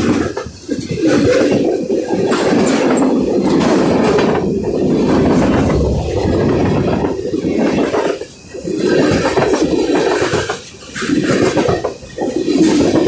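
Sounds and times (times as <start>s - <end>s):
train wheels clacking over rails: 0.0s - 13.0s.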